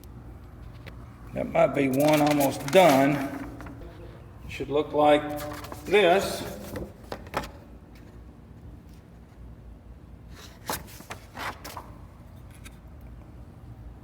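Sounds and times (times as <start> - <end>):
low steady hum: 0.0 - 7.1.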